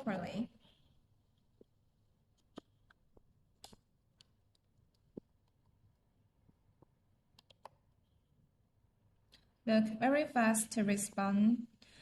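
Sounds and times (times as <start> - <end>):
test probes clicking and tapping: 1.6 - 5.7.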